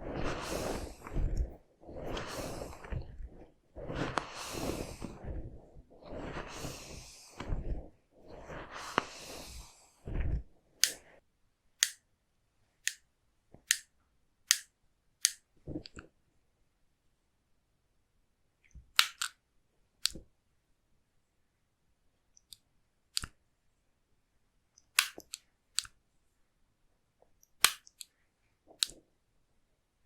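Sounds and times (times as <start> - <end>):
soft whooshes: 0.0 - 11.2
scissors snipping: 27.6 - 28.1.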